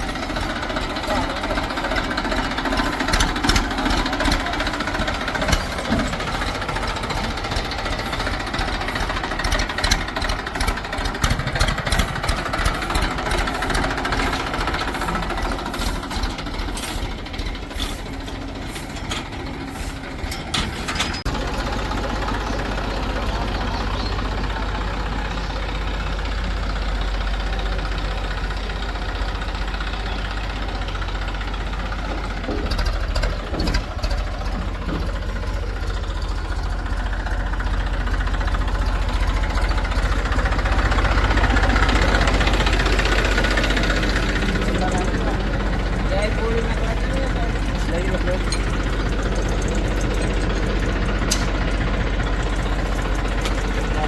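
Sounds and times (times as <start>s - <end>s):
rapid clattering and knocking: 0.0s - 24.0s, 28.3s - 54.0s
diesel engines running: 0.0s - 54.0s.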